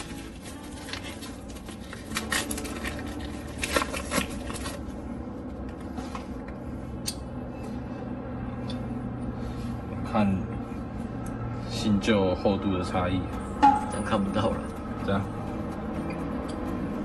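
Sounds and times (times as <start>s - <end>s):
packaging rustling: 0.0s - 5.0s.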